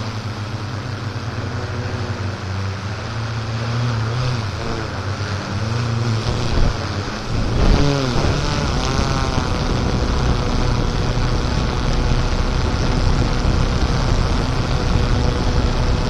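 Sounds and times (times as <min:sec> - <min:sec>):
dense rushing noise: 0:00.0 - 0:16.0
off-road vehicle engine running: 0:00.0 - 0:16.0.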